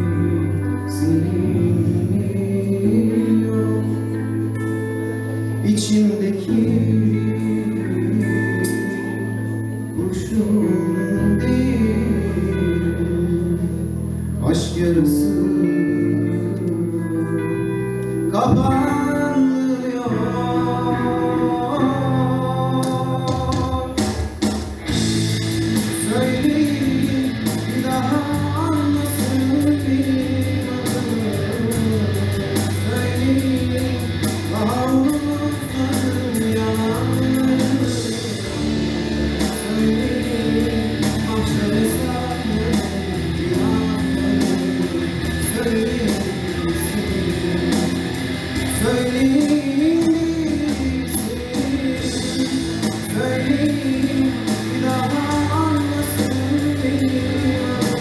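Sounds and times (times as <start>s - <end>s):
band playing rock song: 0.0s - 58.0s
guitar: 0.0s - 58.0s
steady drum beat: 23.3s - 58.0s.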